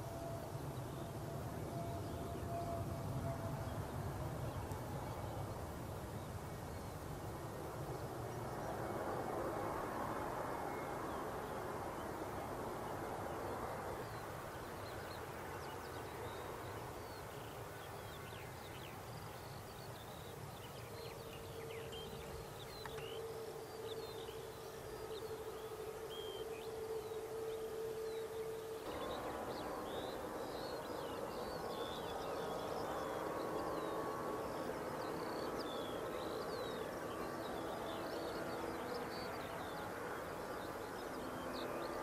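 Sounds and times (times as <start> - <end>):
birds chirping: 13.2 - 42.0
low rushing background: 28.4 - 42.0.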